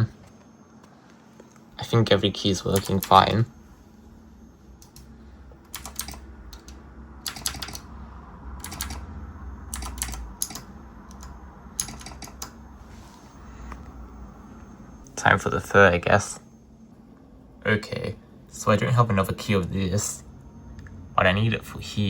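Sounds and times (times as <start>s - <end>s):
mechanical keyboard clicking: 2.7s - 3.2s, 5.7s - 7.9s, 8.6s - 9.1s, 9.7s - 12.6s.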